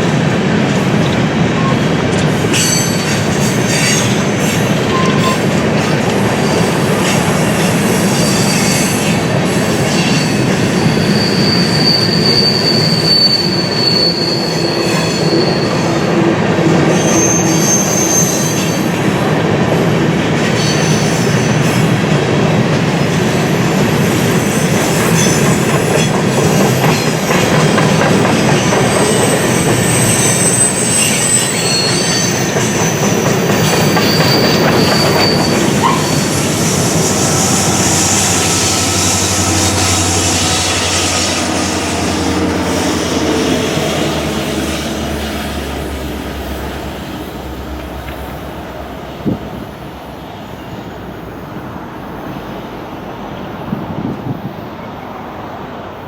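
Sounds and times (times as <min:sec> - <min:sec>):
steel wheels rumbling on rail: 0:00.0 - 0:56.0
high-pitched wheel squeals: 0:10.0 - 0:16.1, 0:16.9 - 0:19.0, 0:28.9 - 0:43.3.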